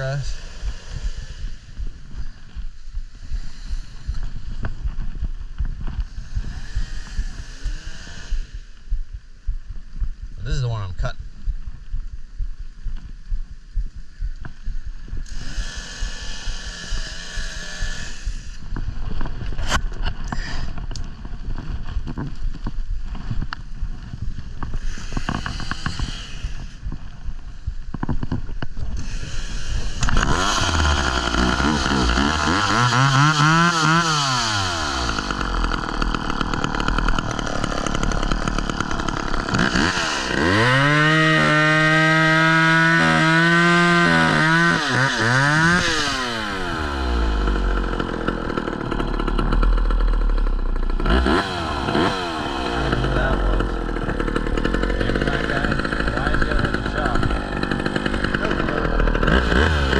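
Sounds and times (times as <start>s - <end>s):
chainsaw engine revving: 0.0s - 1.7s, 6.0s - 8.8s, 15.2s - 18.6s, 24.8s - 26.8s, 29.0s - 59.9s.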